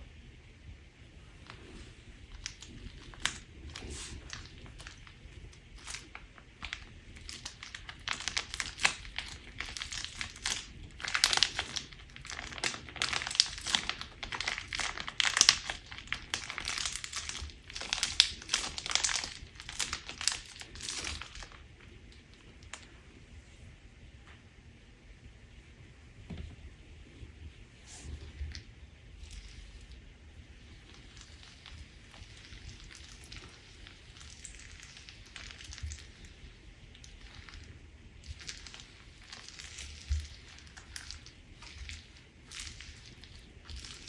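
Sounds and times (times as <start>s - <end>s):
crunchy slime crackling: 1.3s - 23.0s, 27.9s - 44.0s.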